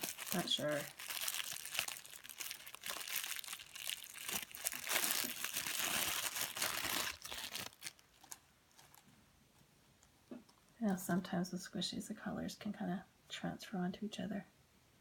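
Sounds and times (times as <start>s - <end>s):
plastic packaging crinkling: 0.0s - 9.1s.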